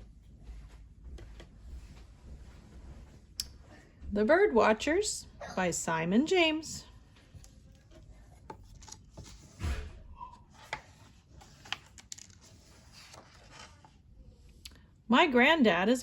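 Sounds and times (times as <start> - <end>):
book pages turning: 7.4 - 9.8, 10.4 - 14.1.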